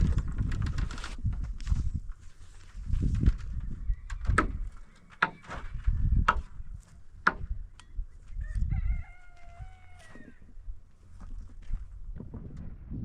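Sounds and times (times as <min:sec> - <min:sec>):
sharp knocks: 0:07.2 - 0:07.6
rooster crowing: 0:08.3 - 0:10.5.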